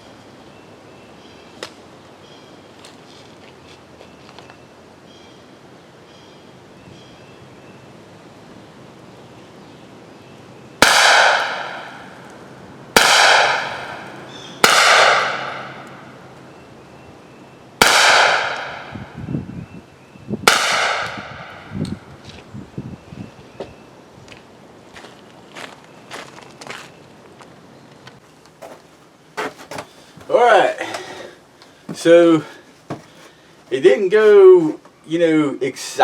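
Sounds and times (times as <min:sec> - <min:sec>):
gunshots with ringing tail: 0:10.8 - 0:12.2, 0:13.0 - 0:15.9, 0:17.8 - 0:19.0, 0:20.5 - 0:21.6.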